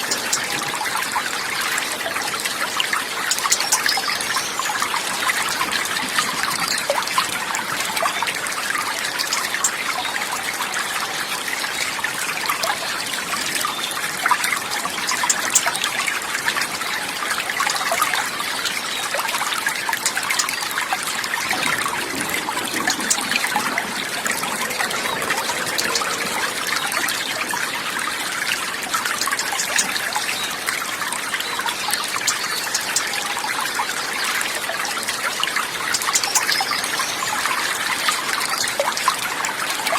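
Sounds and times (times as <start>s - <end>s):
water trickling and babbling: 0.0s - 39.9s.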